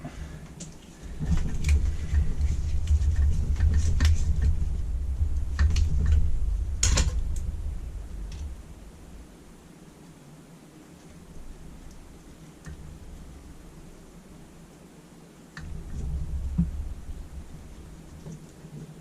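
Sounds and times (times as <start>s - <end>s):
low rumble: 1.0s - 9.6s, 15.6s - 18.3s.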